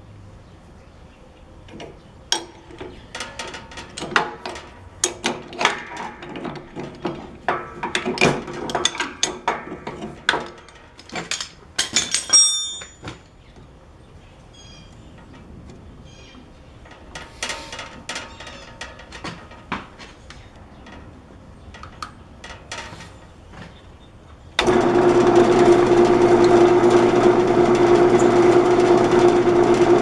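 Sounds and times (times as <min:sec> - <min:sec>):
ringing metal clink: 0:11.3 - 0:13.1
metallic clicks and scrapes of tools: 0:16.9 - 0:21.1, 0:21.7 - 0:23.3.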